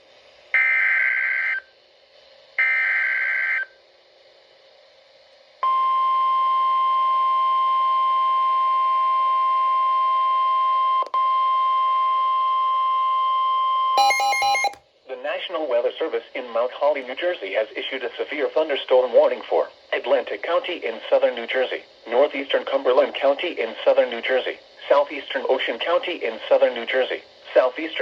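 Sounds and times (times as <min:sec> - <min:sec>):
steady warning alarm tone: 0:14.0 - 0:14.8.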